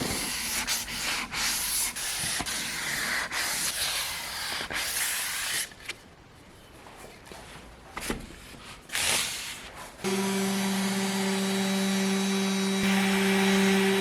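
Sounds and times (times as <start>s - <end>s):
sandpaper scratching wood: 0.0s - 5.7s.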